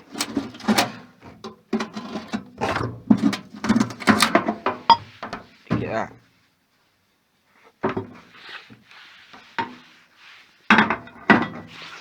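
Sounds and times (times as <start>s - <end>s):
metal parts clicking and knocking: 0.0s - 5.4s.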